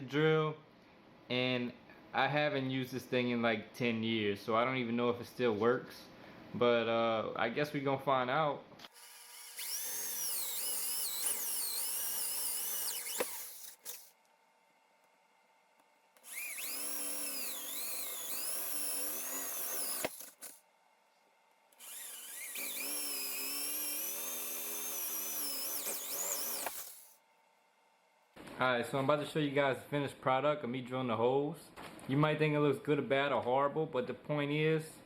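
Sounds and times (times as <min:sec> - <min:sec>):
electric drill boring into wood: 0:08.9 - 0:14.1, 0:16.2 - 0:20.6, 0:21.8 - 0:27.2.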